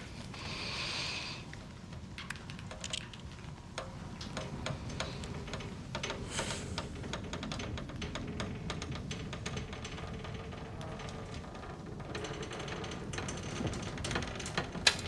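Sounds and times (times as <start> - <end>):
fire crackling and popping: 0.0 - 15.0
low steady rumble: 0.0 - 15.0.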